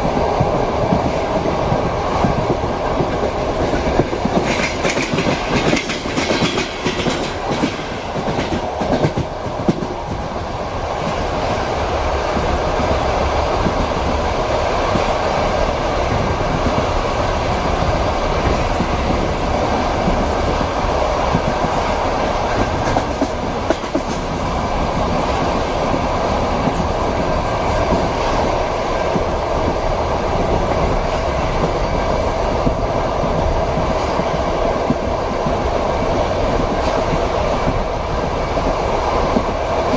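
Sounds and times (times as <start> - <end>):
train rumble: 0.0 - 39.9
wheels clacking over rail joints: 0.9 - 10.3.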